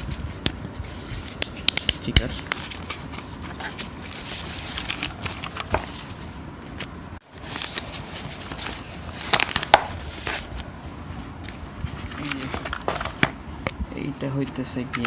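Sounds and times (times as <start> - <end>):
packaging rustling and crinkling: 0.0 - 6.3, 7.3 - 10.7, 11.5 - 13.3.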